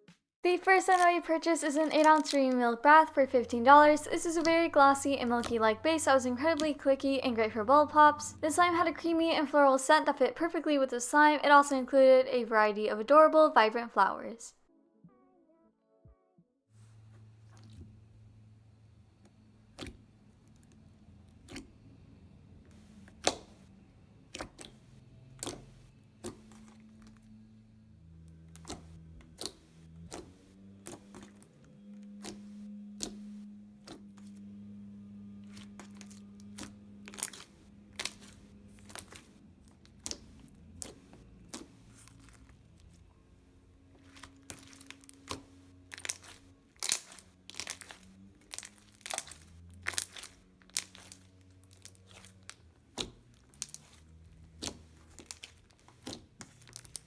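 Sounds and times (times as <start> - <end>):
slime clicking and popping: 1.9 - 2.5, 23.2 - 23.5, 25.4 - 26.8, 28.6 - 31.4, 33.0 - 33.2, 35.5 - 42.4, 44.1 - 57.0.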